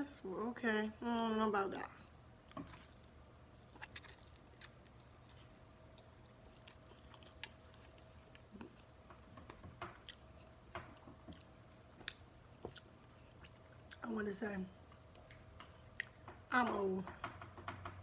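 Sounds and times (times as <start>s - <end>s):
low steady hum: 0.0s - 18.0s
quiet chewing: 2.6s - 14.0s, 14.9s - 16.4s.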